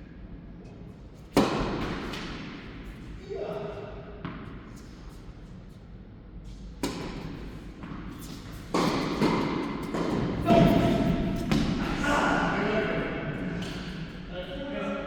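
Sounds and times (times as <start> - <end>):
tennis ball strikes: 1.4 - 2.5, 6.8 - 8.1.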